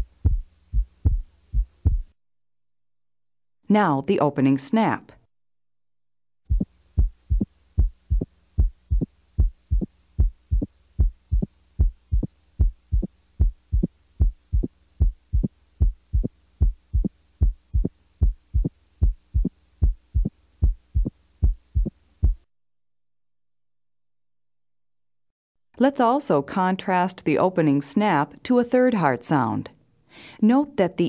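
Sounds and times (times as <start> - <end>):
heartbeat through stethoscope: 0.0 - 2.2, 6.5 - 22.5.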